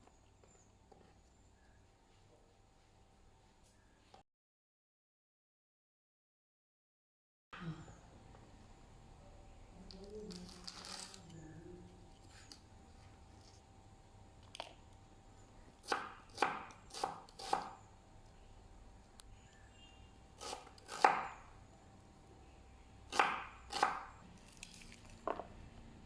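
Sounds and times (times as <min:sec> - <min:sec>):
knife chopping on cutting board: 0:15.8 - 0:17.8, 0:20.4 - 0:21.4, 0:23.1 - 0:24.1.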